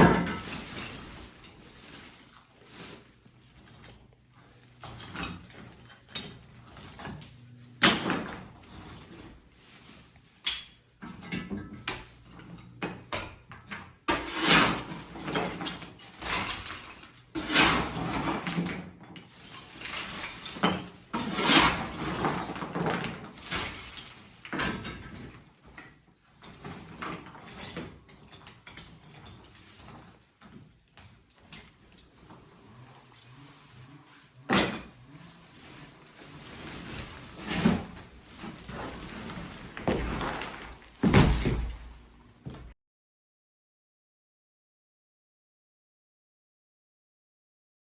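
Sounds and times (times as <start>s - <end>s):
debris clattering: 0.0s - 9.9s, 32.3s - 42.2s
scraping: 28.5s - 42.8s.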